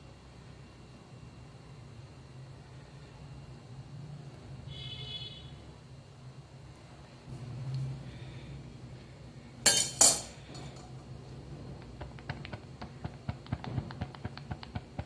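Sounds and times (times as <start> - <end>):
metal pot clanging: 9.7 - 10.8
pan ticking and popping: 11.7 - 15.0.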